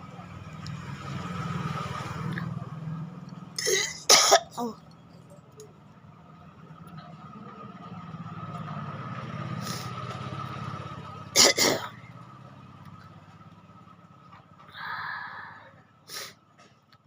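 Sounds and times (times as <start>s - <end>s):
low engine hum: 0.0s - 17.0s
sharp explosive coughs: 3.6s - 4.7s, 11.4s - 12.0s.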